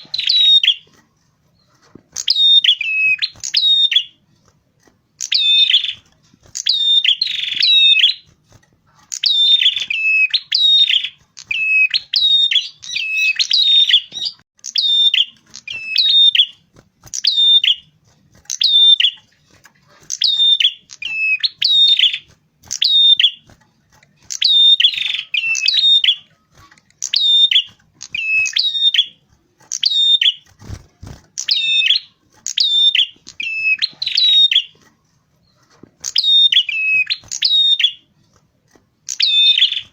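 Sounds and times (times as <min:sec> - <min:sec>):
songbird singing high chirps: 0:00.0 - 0:00.8, 0:02.2 - 0:04.2, 0:05.2 - 0:08.3, 0:09.1 - 0:17.9, 0:20.1 - 0:23.5, 0:24.3 - 0:26.3, 0:27.0 - 0:34.7, 0:36.0 - 0:38.0, 0:39.0 - 0:39.9.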